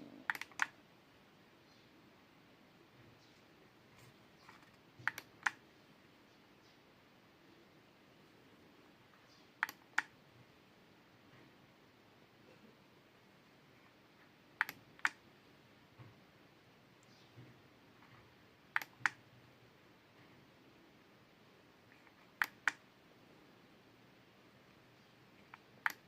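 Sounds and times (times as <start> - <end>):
mouse button clicking: 0.3 - 0.7, 4.4 - 5.6, 9.3 - 10.1, 14.6 - 15.2, 22.1 - 22.8, 25.4 - 26.0.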